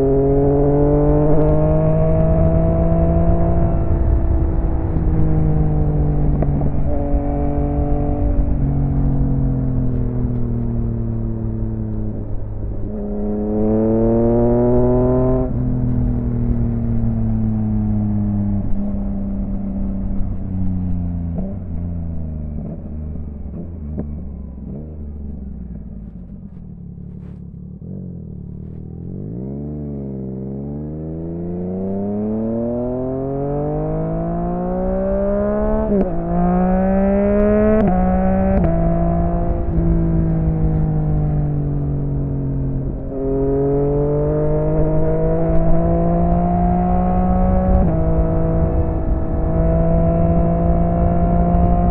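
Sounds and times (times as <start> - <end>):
motorcycle engine revving: 0.0 - 51.9.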